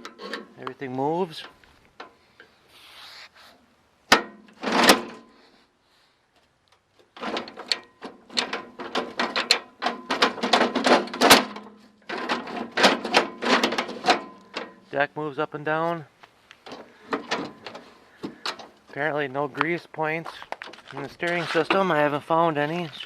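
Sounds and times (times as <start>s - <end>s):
metal clanks: 4.1s - 5.3s, 7.1s - 14.9s, 16.6s - 19.0s
metallic clacks and rattles: 7.0s - 14.9s, 16.6s - 19.0s.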